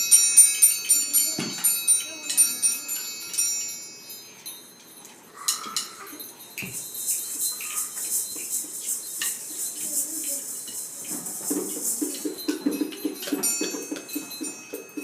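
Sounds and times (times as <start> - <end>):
shaker hissing: 5.4 - 14.7
hand percussion taps and knocks: 6.6 - 15.0.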